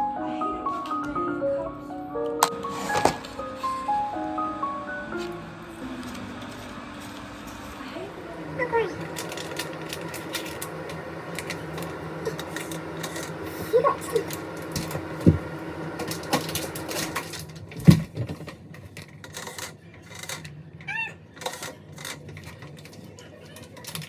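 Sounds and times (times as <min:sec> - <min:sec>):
steady hum: 0:00.0 - 0:18.1
objects clicking and knocking: 0:09.0 - 0:24.0.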